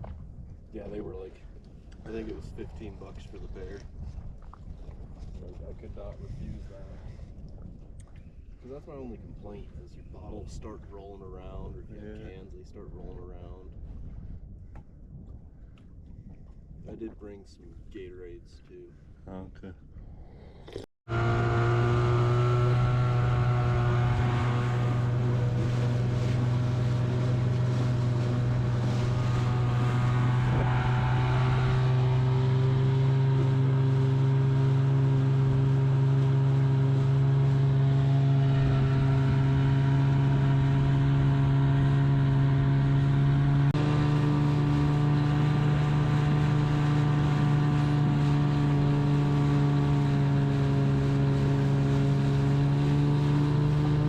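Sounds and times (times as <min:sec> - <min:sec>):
boat engine running: 0:20.7 - 0:54.0.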